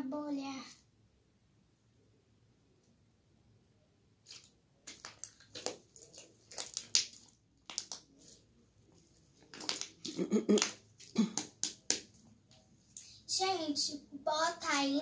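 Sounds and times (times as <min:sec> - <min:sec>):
slime squelching wet clicks: 0:04.3 - 0:08.1, 0:09.5 - 0:12.2.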